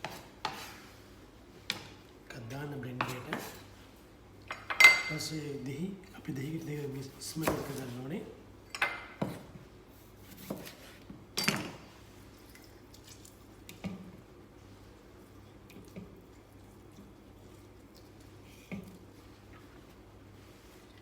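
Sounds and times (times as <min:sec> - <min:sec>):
juice dripping and splashing: 0:12.4 - 0:13.9, 0:15.1 - 0:19.8.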